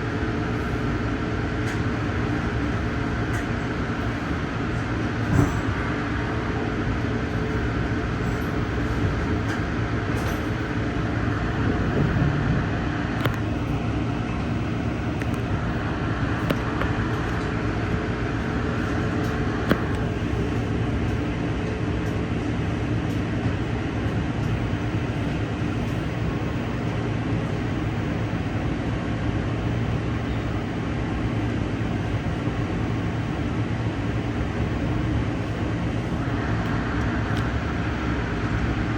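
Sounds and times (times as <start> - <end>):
train wheels on rails rumbling: 0.0 - 38.9.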